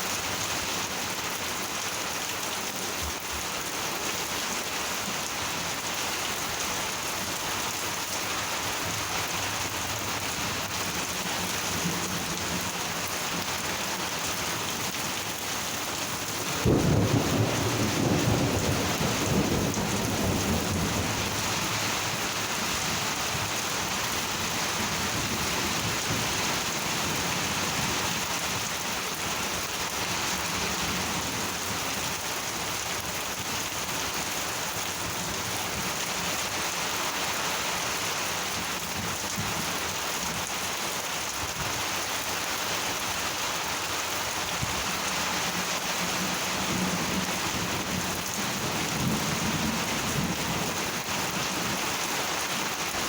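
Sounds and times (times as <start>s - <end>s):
heavy rain: 0.0s - 53.0s
thunder rumbling: 16.6s - 21.4s.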